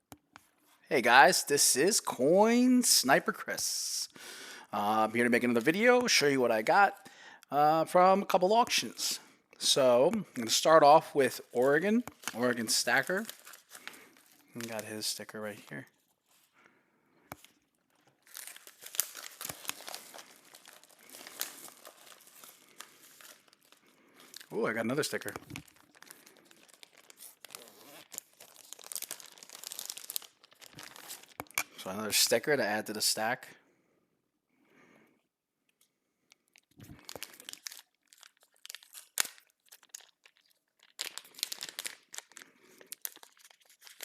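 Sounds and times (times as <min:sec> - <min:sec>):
packaging rustling and crinkling: 0:11.2 - 0:16.5, 0:17.4 - 0:31.7, 0:36.3 - 0:44.0.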